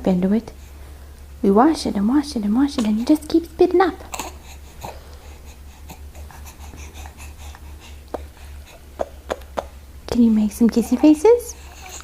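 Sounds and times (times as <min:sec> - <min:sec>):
steady low hum: 0:00.0 - 0:12.0
baby breathing: 0:04.0 - 0:09.8, 0:11.4 - 0:12.0.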